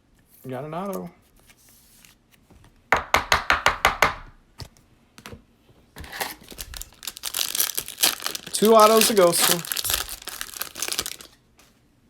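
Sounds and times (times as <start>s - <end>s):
foil wrapper crinkling and tearing: 6.0s - 11.4s.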